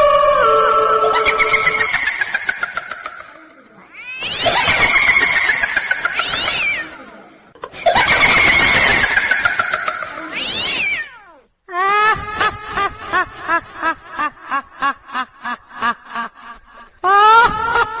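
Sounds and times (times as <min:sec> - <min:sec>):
high-pitched cackling laugh: 0:01.0 - 0:03.6, 0:04.2 - 0:10.4, 0:12.1 - 0:18.0.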